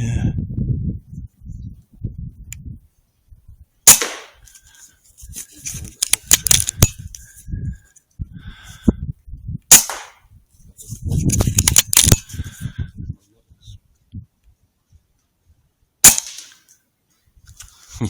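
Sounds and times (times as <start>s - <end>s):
air rifle shots: 3.9s - 4.4s, 6.0s - 7.0s, 9.7s - 10.2s, 11.6s - 12.3s, 16.0s - 16.6s.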